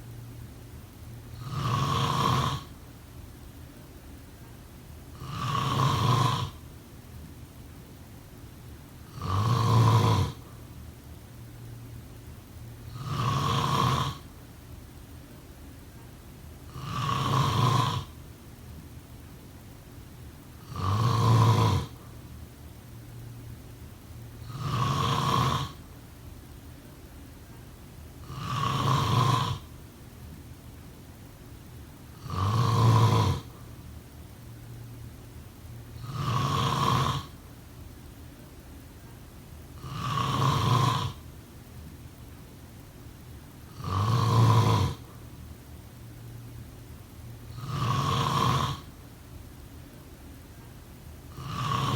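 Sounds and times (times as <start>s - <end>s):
person snoring: 1.4s - 2.8s, 5.1s - 6.6s, 9.1s - 10.6s, 12.9s - 14.3s, 16.7s - 18.2s, 20.6s - 22.1s, 24.4s - 25.8s, 28.2s - 29.8s, 32.2s - 33.6s, 36.0s - 37.4s, 39.8s - 41.2s, 43.7s - 45.1s, 47.5s - 48.9s, 51.3s - 51.9s.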